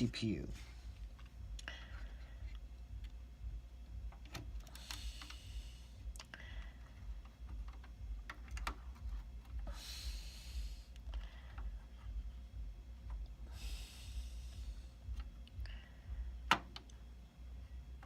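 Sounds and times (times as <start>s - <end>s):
steady low hum: 0.0s - 18.0s
hardware clicks and taps: 6.2s - 9.6s, 16.4s - 17.0s.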